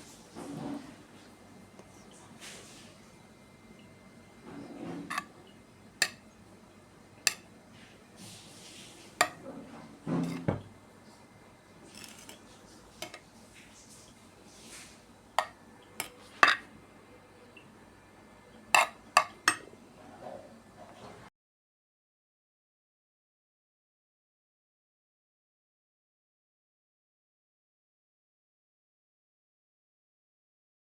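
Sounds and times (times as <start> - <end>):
cutlery scraping a plate: 4.4 - 6.2, 7.2 - 10.7, 11.8 - 16.7, 18.7 - 21.2
cutlery clinking on a plate: 4.5 - 5.4, 6.0 - 6.2, 7.3 - 7.5, 9.2 - 10.7, 11.9 - 13.3, 15.4 - 16.7, 18.8 - 19.7.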